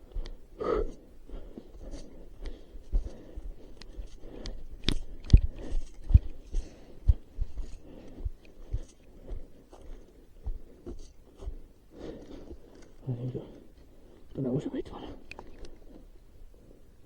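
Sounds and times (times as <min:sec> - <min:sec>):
footsteps crunching through dry undergrowth: 0:01.3 - 0:14.2.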